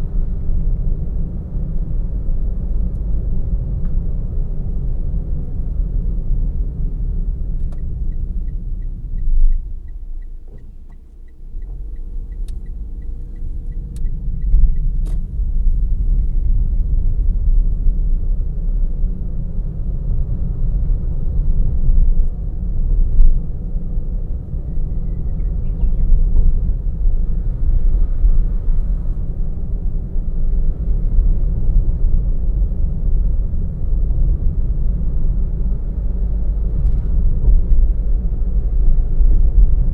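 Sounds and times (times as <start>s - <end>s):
car road and engine rumble: 0.0s - 39.9s
light even ticking: 7.5s - 15.4s.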